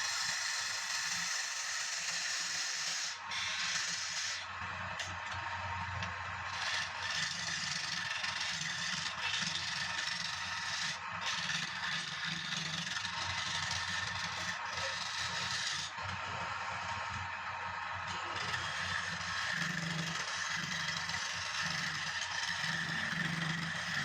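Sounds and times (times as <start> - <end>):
tool scraping turning wood: 6.5 - 16.0, 18.1 - 24.0.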